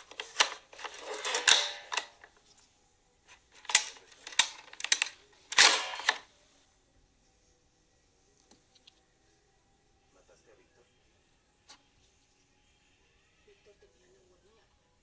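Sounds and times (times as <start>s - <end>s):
plastic toy parts clicking and rattling: 0.0s - 2.3s, 3.6s - 6.2s.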